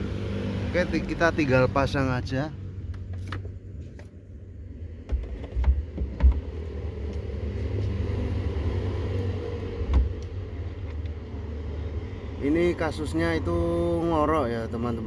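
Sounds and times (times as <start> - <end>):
blower motor rumble and hum: 0.0 - 15.0
knocks of parts being handled: 5.0 - 6.7.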